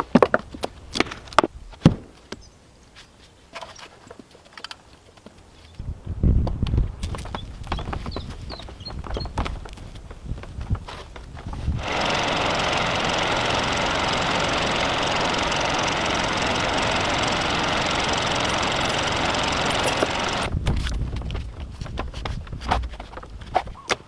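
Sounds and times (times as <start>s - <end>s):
power tool running under load: 11.4s - 20.5s.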